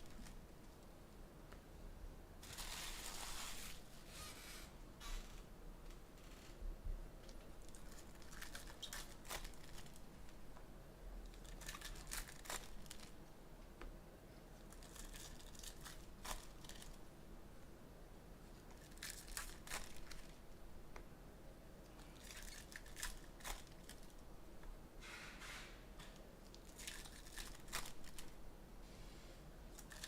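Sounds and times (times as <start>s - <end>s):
wrappers tearing and crinkling: 2.4s - 3.8s, 7.6s - 10.0s, 11.3s - 13.2s, 14.7s - 17.0s, 18.7s - 20.4s, 22.2s - 24.2s, 26.5s - 28.4s, 29.7s - 30.0s.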